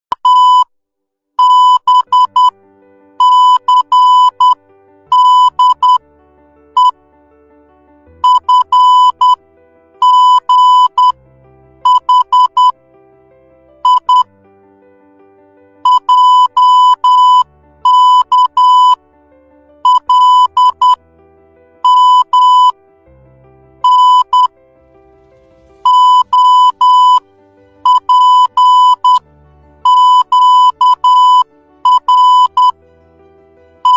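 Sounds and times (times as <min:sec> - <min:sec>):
morse code beeps: 0:00.1 - 0:00.7, 0:01.4 - 0:02.5, 0:03.2 - 0:06.0, 0:06.8 - 0:07.0, 0:08.2 - 0:09.4, 0:10.0 - 0:11.2, 0:11.8 - 0:12.8, 0:13.8 - 0:14.3, 0:15.8 - 0:19.0, 0:19.8 - 0:21.0, 0:21.8 - 0:22.7, 0:23.8 - 0:24.5, 0:25.8 - 0:27.2, 0:27.8 - 0:29.2, 0:29.8 - 0:32.8
soft background music: 0:01.4 - 0:33.9.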